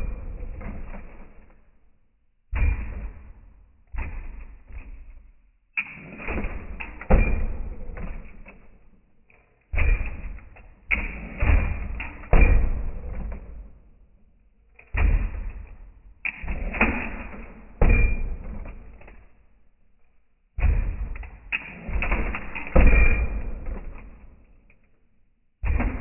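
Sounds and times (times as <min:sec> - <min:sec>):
heavy bangs and thumps: 0:02.5 - 0:05.3, 0:09.8 - 0:13.8, 0:15.0 - 0:19.1, 0:25.6 - 0:26.0.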